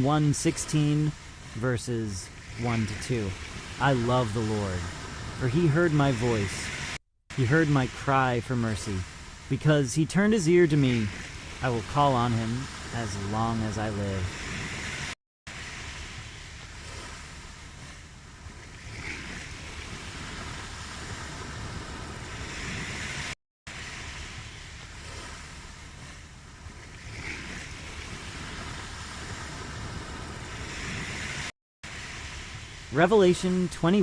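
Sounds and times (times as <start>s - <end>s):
ocean waves breaking: 0.0s - 34.0s.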